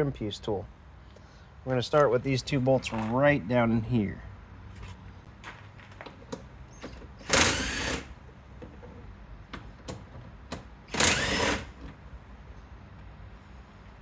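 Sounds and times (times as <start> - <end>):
cordless impact tool bursts: 7.2 - 8.2, 10.9 - 11.8.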